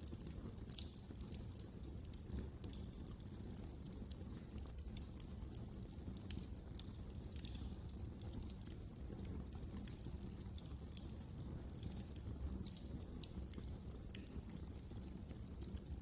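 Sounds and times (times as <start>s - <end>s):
low rumble of flames: 0.0s - 16.0s
wood fire crackling: 0.0s - 16.0s.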